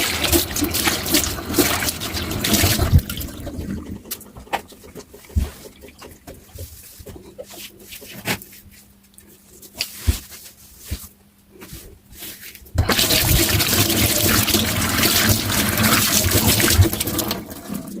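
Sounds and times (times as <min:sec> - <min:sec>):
water gushing from tap: 0:00.0 - 0:06.6, 0:12.8 - 0:18.0.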